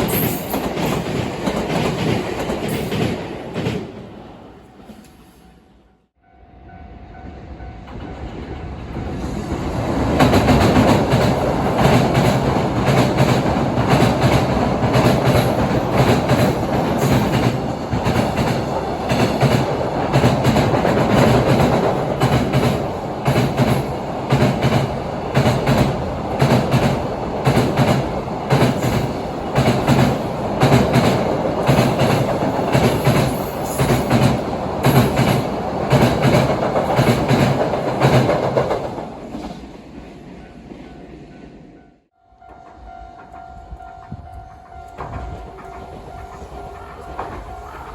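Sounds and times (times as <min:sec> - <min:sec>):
train wheels clacking over rail joints: 0:10.1 - 0:39.5.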